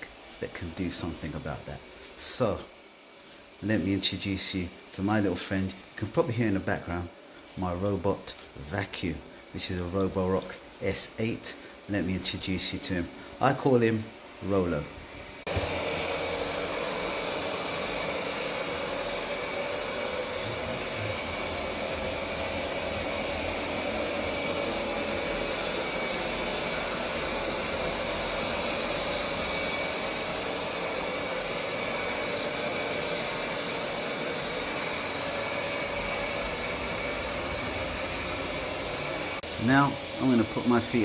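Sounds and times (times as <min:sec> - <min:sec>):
high whine: 0:10.8 - 0:41.0
robot vacuum suction whir: 0:14.4 - 0:41.0.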